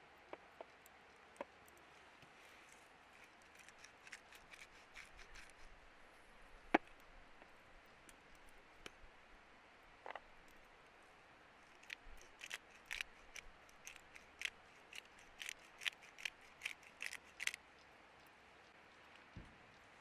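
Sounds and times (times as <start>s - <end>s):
sharp snips and clicks: 3.2s - 5.7s, 11.7s - 17.6s.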